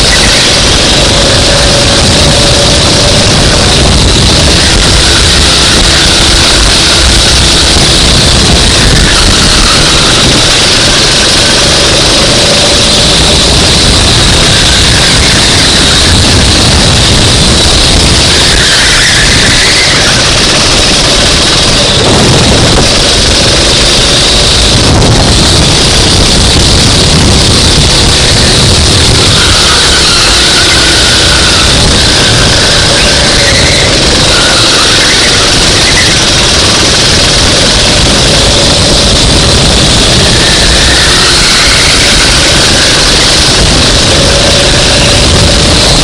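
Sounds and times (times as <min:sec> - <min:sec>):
go-kart engine roaring: 0:00.0 - 0:46.0
wind noise on microphone: 0:00.0 - 0:46.0.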